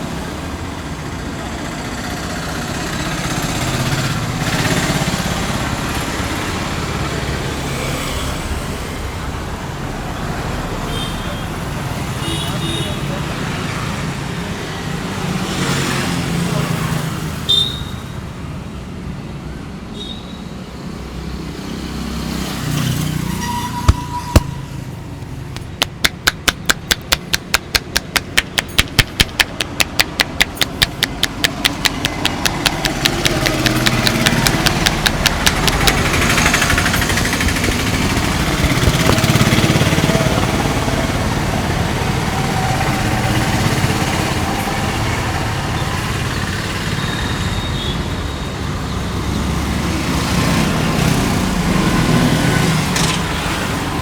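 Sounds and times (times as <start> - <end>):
street traffic noise: 0.0 - 54.0
sharp clicks of barber tools: 25.6 - 38.0.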